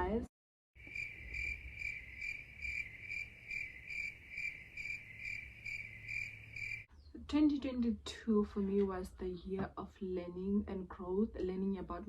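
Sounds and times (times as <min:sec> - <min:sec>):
cricket chirping: 0:00.8 - 0:06.9.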